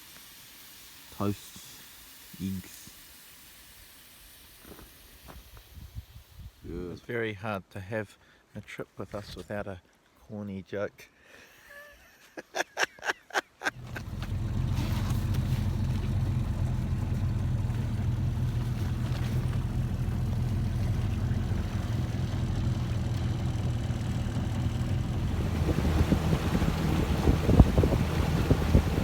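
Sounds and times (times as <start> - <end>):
wind: 0.0 - 29.0
motorboat engine humming: 13.8 - 29.0
water rushing: 13.8 - 29.0.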